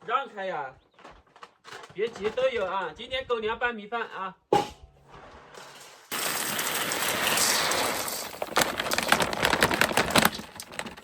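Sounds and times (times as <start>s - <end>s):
dry kibble pouring into container: 6.1s - 11.0s.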